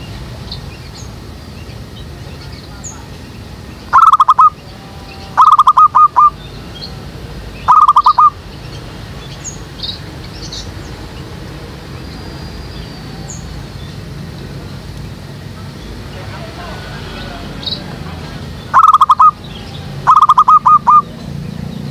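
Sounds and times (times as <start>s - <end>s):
faint high bird chirps: 2.4s - 6.9s, 7.6s - 8.4s, 18.7s - 21.2s
dove cooing: 3.9s - 4.6s, 5.3s - 6.4s, 7.7s - 8.4s, 18.7s - 19.4s, 20.0s - 21.1s.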